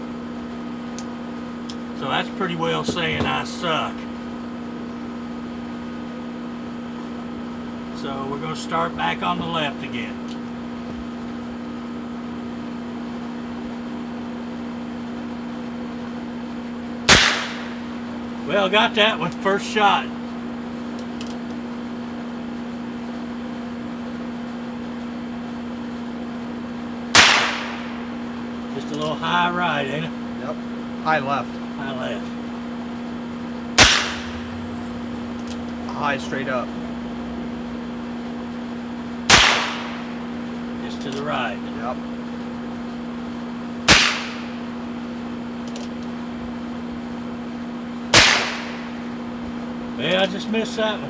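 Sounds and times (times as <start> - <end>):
steady low hum: 0.0 - 51.0
revolver shots: 17.1 - 17.9, 27.1 - 28.2, 33.8 - 34.7, 39.3 - 40.4, 43.9 - 44.7, 48.1 - 49.1.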